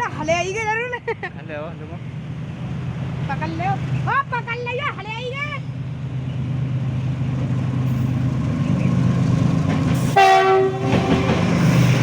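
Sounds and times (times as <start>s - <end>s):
train rumbling over a bridge: 0.0s - 12.0s
locomotive horn blast: 10.1s - 11.9s.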